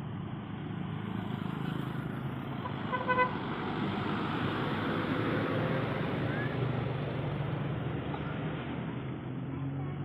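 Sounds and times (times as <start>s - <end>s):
bus engine running: 0.0s - 10.0s
bus horn toot: 2.6s - 3.4s.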